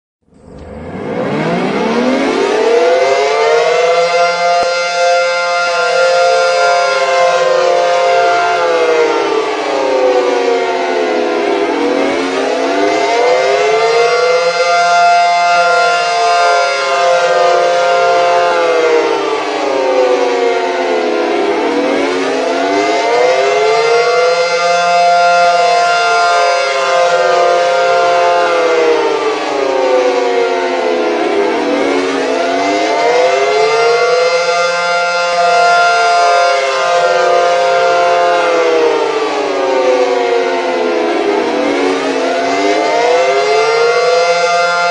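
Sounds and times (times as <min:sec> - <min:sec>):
civil defense sirens wailing: 0:00.2 - 0:44.9.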